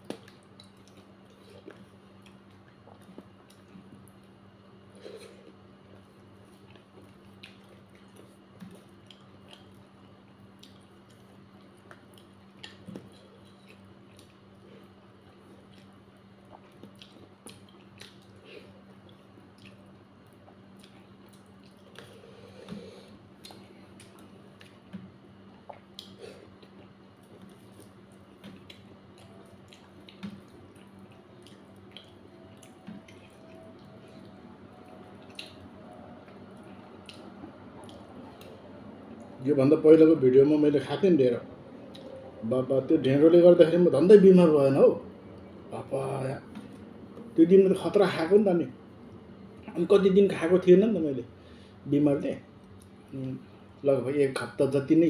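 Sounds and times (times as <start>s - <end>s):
wet chewing and squishing: 0.0s - 39.4s, 41.7s - 42.4s, 52.5s - 53.4s
steady low hum: 0.0s - 55.0s
mouth clicks and smacks: 15.6s - 22.8s, 23.4s - 34.3s, 34.9s - 36.4s, 37.0s - 38.6s.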